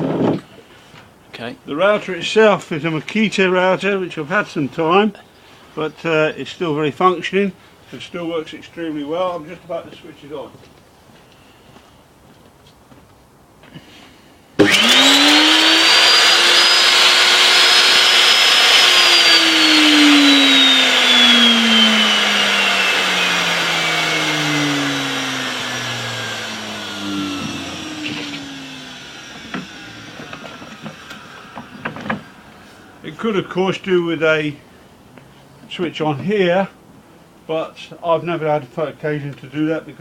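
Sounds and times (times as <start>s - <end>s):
router motor whine: 14.6s - 32.5s.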